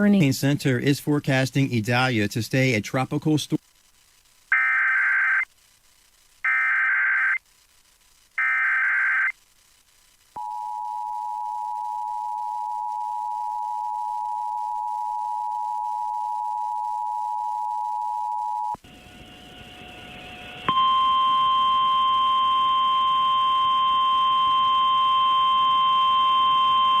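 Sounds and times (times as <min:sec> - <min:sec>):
screeching data bursts: 0:04.5 - 0:05.6, 0:06.4 - 0:07.5, 0:08.4 - 0:09.4.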